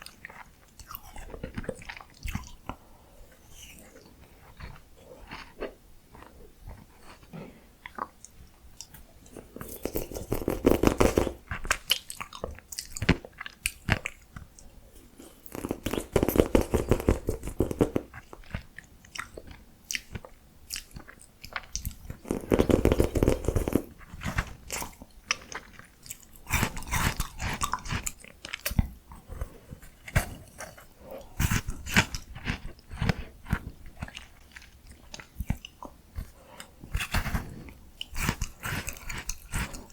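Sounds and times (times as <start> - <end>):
ice cream being chewed: 0.0 - 39.9
clicking mouth sounds: 15.4 - 23.9.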